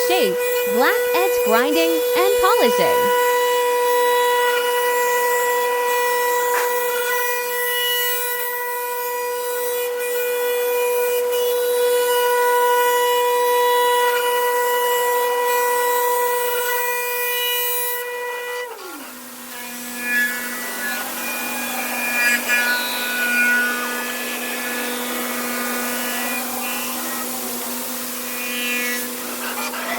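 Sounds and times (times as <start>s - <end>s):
machine spindle whining: 19.0s - 29.9s.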